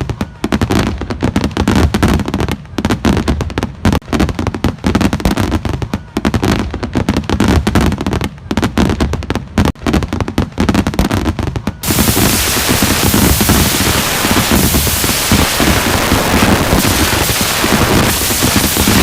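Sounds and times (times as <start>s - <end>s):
fireworks bangs and crackling: 0.0s - 19.0s
steady hiss: 11.8s - 19.0s.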